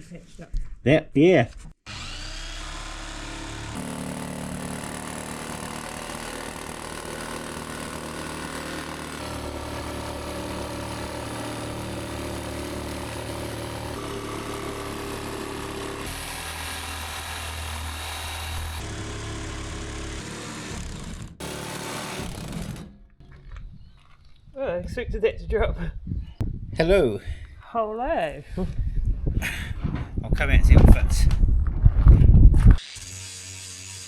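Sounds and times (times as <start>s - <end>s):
power tool cutting through metal wall: 1.9s - 23.2s, 32.8s - 34.0s.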